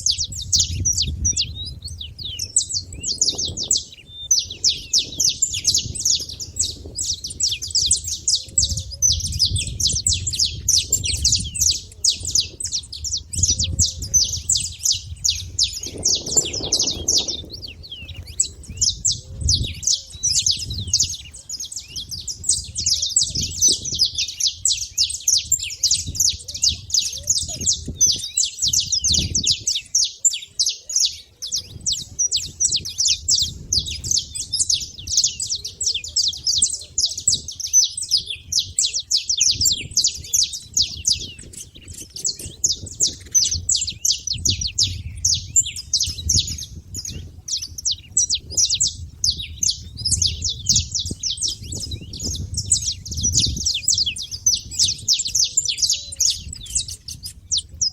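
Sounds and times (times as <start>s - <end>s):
finches chirping: 0.0s - 57.9s.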